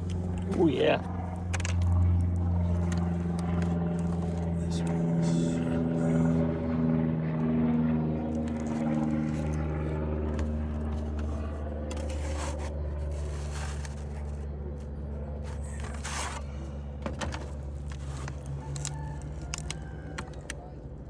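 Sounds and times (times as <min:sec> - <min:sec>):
low engine-like hum: 0:00.0 - 0:21.0
tools scraping wood: 0:10.3 - 0:14.4, 0:15.4 - 0:19.1.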